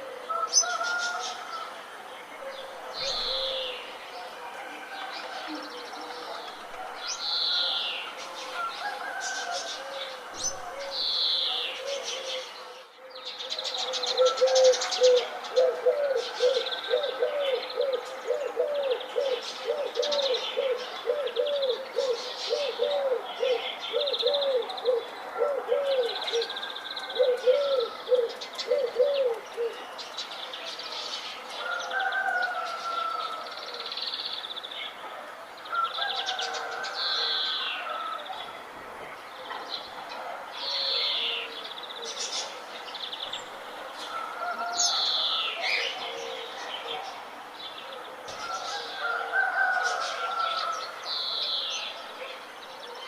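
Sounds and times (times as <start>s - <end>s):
songbirds chirping and trilling: 0.0s - 53.0s.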